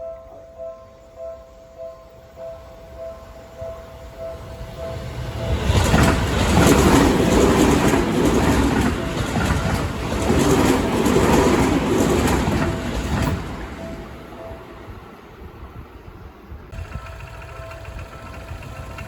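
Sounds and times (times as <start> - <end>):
train wheels rumbling and clacking: 4.3 - 15.1, 16.7 - 19.0
level-crossing bell ringing: 16.8 - 19.0.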